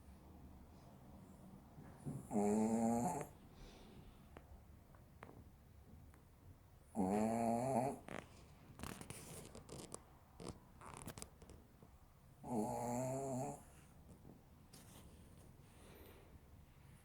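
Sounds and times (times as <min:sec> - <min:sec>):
dog snoring: 0:02.0 - 0:03.4, 0:06.9 - 0:08.3, 0:12.4 - 0:13.9.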